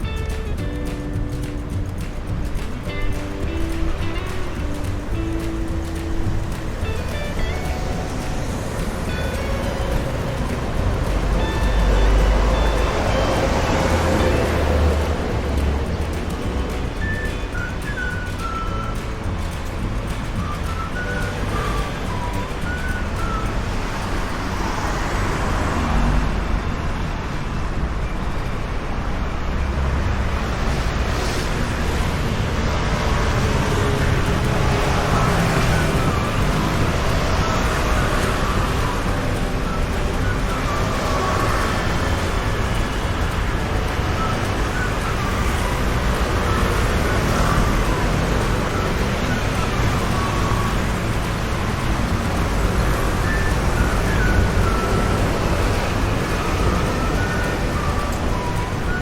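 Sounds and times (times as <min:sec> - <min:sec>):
road traffic noise: 0:00.0 - 0:59.0.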